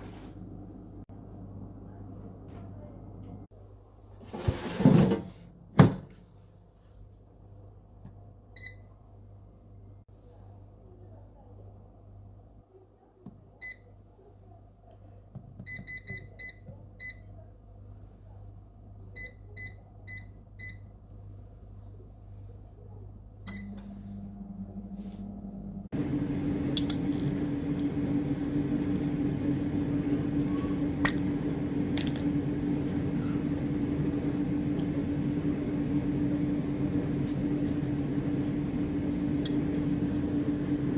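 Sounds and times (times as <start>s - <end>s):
low hum: 21.1s - 40.9s
fan whirring: 21.2s - 40.9s.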